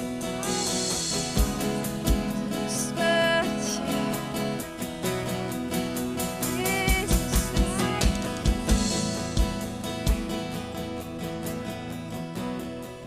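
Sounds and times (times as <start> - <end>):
band playing instrumental: 0.0 - 11.7
kick drum beats: 6.8 - 10.6.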